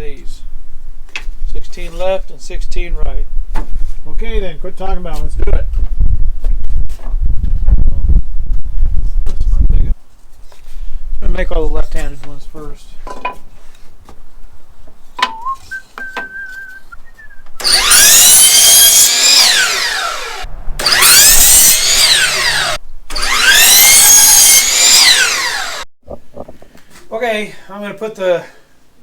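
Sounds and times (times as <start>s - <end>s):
electric power saw cutting wood: 17.6s - 25.9s.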